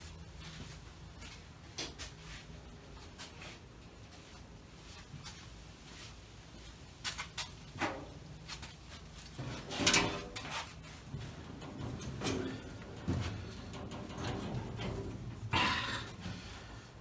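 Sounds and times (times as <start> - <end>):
light clicks and knocks: 9.3 - 15.5.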